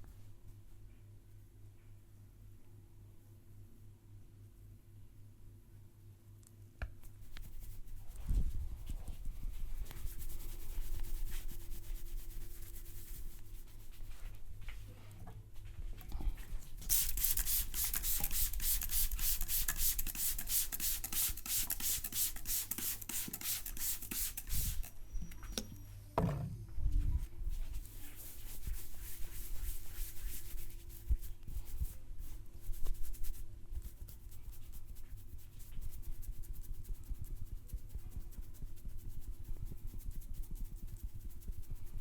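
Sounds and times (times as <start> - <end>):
hands rubbing hair and skin: 7.0 - 14.8, 16.5 - 25.0, 27.5 - 42.0
dull thump: 26.2 - 26.7.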